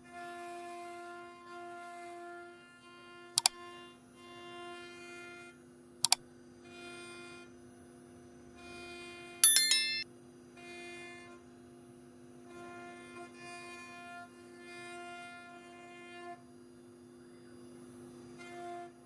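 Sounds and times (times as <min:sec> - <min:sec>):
bright ringing accents: 0:09.4 - 0:10.0
chiming flourish: 0:09.4 - 0:10.0.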